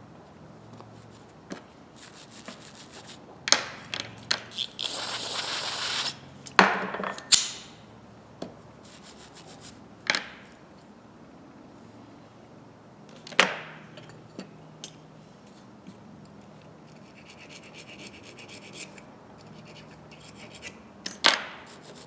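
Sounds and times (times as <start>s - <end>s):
rubbing and scrubbing: 2.0s - 3.2s, 4.5s - 6.2s, 8.9s - 9.8s, 21.7s - 22.0s
steady hiss: 4.5s - 6.2s
metal pliers clicking: 7.3s - 7.7s.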